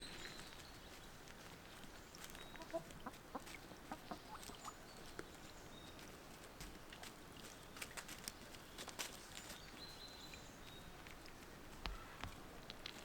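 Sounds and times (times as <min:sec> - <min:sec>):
chickens clucking: 0:02.2 - 0:05.3.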